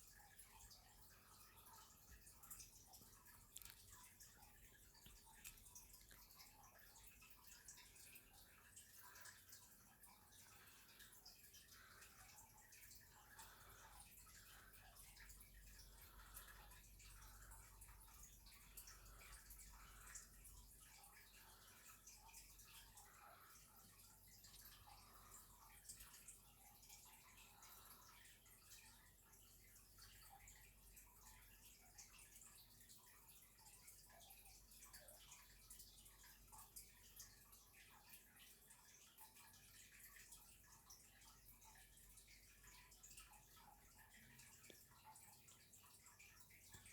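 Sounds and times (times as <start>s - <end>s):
small ticks: 0.0s - 46.9s.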